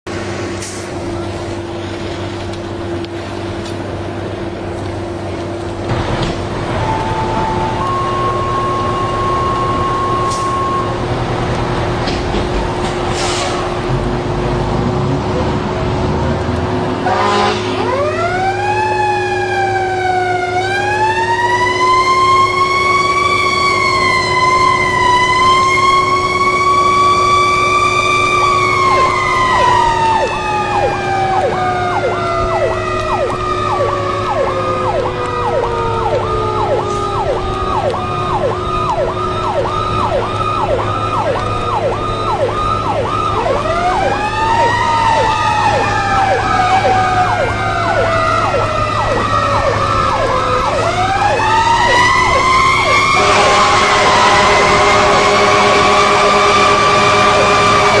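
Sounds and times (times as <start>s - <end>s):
fire truck siren wailing: 0.1s - 58.0s
siren yelping: 6.8s - 11.1s, 17.8s - 58.0s.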